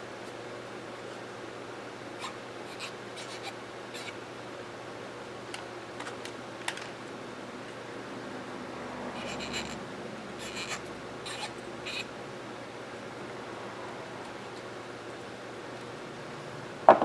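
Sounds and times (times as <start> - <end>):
steady background hum: 0.0 - 17.0
rifle bolt parts scraping and clicking: 5.6 - 7.0.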